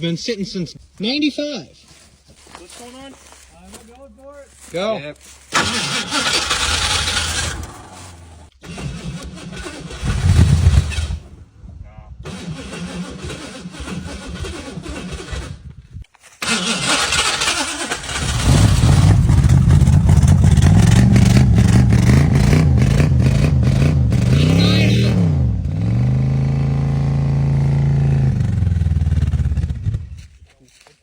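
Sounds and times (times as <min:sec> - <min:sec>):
starter motor cranking: 0:05.6 - 0:11.2, 0:16.4 - 0:23.1.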